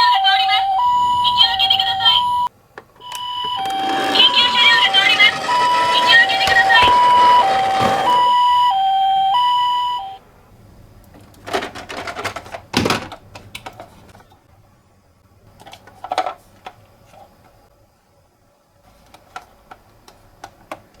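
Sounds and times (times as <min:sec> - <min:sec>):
toy two-tone siren: 0:00.0 - 0:10.2
plastic toy cars clattering: 0:03.6 - 0:08.4, 0:11.2 - 0:14.3, 0:15.6 - 0:17.2.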